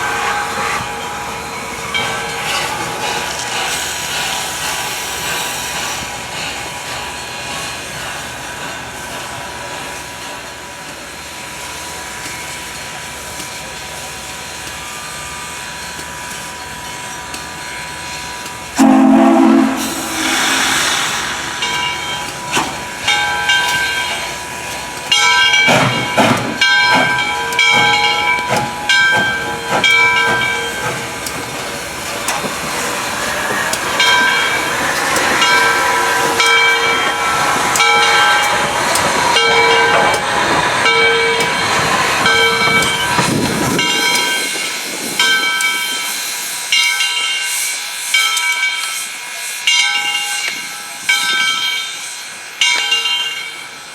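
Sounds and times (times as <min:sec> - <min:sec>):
loud steam hiss: 0:00.0 - 0:53.9
steam locomotive background noise: 0:00.0 - 0:53.9.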